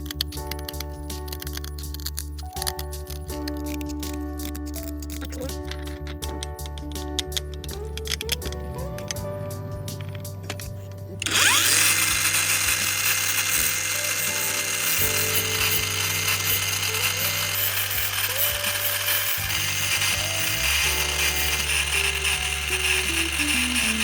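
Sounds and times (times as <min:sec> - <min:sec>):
background music: 0:00.0 - 0:24.0
power tool whining: 0:09.9 - 0:24.0.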